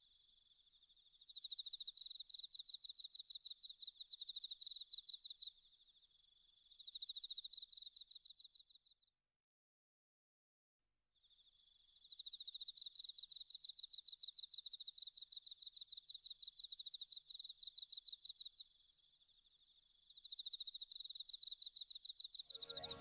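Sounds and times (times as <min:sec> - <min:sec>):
insect chirping trill: 0:11.3 - 0:23.0.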